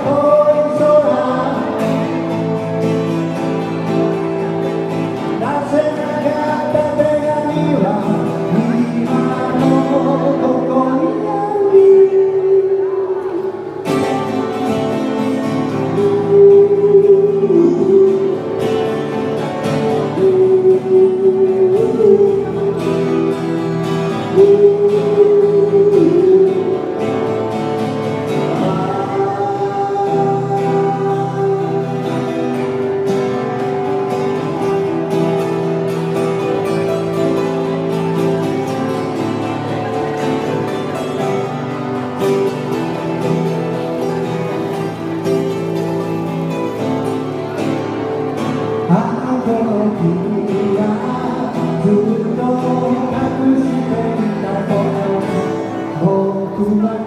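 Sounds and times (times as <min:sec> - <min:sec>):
song with sung melody: 0:00.0 - 0:57.0.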